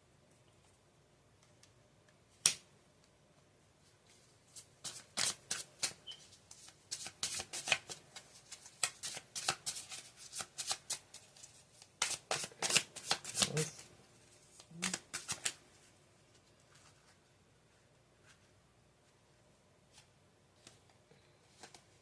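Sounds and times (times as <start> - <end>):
cards being shuffled: 4.1 - 13.9, 14.5 - 15.6
card slaps and rustles: 4.5 - 13.8, 14.6 - 15.6.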